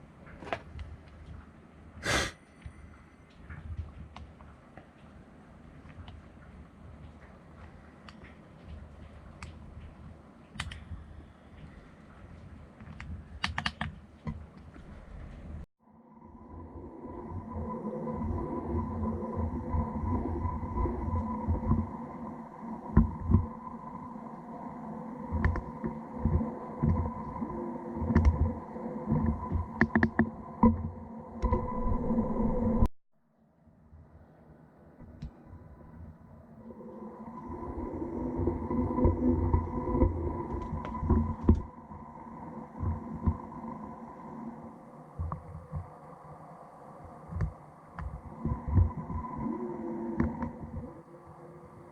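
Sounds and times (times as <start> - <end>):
uneven low rumble: 14.0 - 32.9, 35.0 - 51.9.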